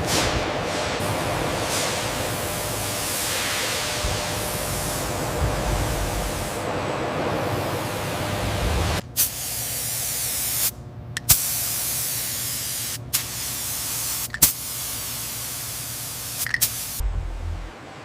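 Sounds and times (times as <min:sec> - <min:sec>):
high-pressure spray hissing: 0:01.1 - 0:06.7, 0:09.2 - 0:17.0
low rushing noise: 0:01.1 - 0:09.0, 0:17.0 - 0:18.0.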